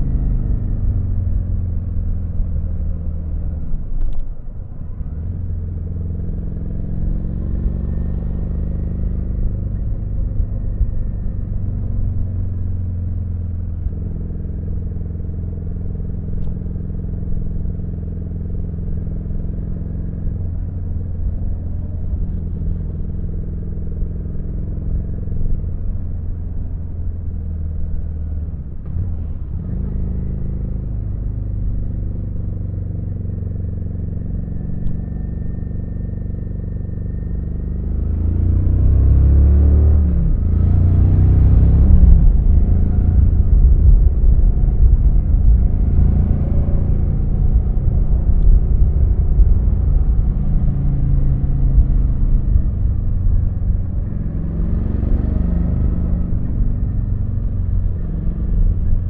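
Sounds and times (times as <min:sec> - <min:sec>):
motorcycle engine running: 0:40.1 - 0:59.0.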